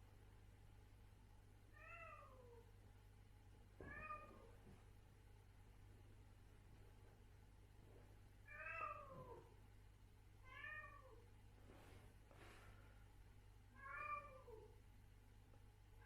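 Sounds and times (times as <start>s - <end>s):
soft rustle: 11.4s - 13.1s.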